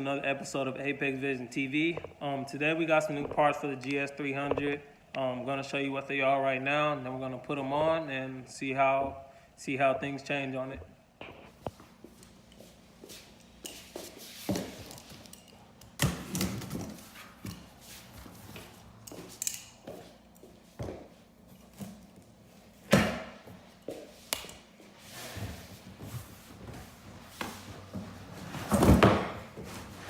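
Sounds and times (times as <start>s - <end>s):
objects knocking and thunking: 14.4s - 17.8s, 27.4s - 30.0s.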